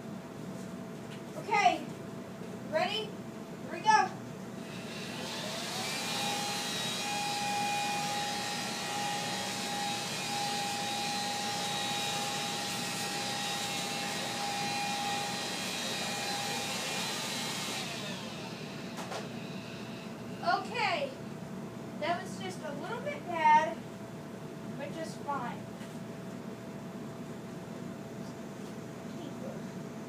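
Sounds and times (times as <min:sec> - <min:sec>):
vacuum cleaner motor whine: 0:04.6 - 0:20.6.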